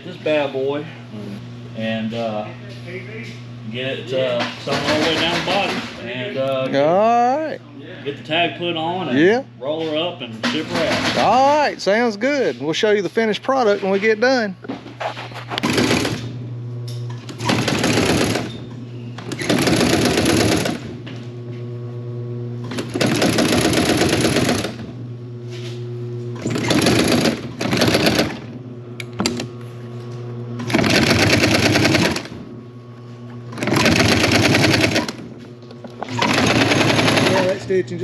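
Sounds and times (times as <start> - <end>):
sewing machine motor humming: 15.5 - 16.4, 17.2 - 18.6, 19.2 - 21.1, 22.6 - 25.0, 26.3 - 29.6, 30.6 - 32.5, 33.5 - 37.8
sewing machine needle strokes: 33.6 - 35.2, 36.1 - 37.6.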